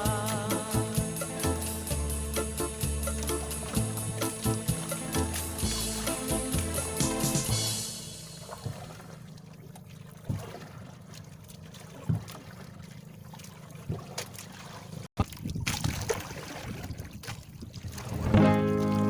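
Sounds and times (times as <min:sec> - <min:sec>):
small boat motor running: 0:00.0 - 0:15.1
water noise: 0:00.0 - 0:19.0.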